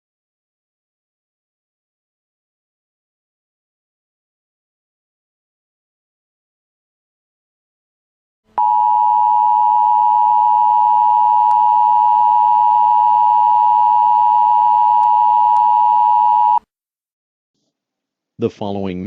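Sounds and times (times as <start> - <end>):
two-tone alarm: 8.6 - 16.6.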